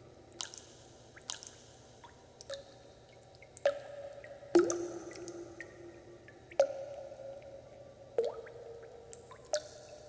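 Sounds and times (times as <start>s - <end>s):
faint small drips: 0.0s - 10.0s
water drops plinking: 3.6s - 5.8s.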